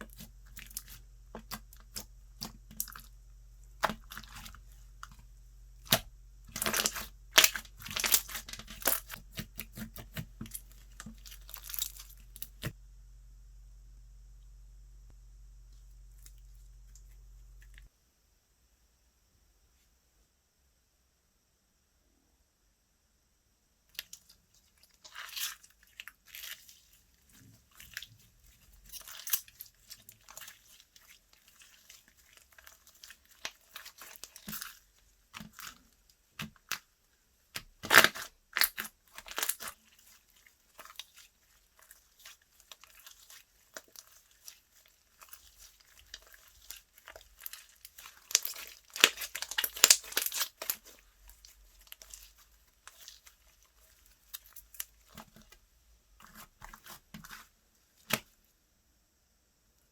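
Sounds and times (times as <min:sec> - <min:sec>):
slime crackling and popping: 0:05.8 - 0:12.8, 0:27.7 - 0:36.9, 0:37.5 - 0:55.6.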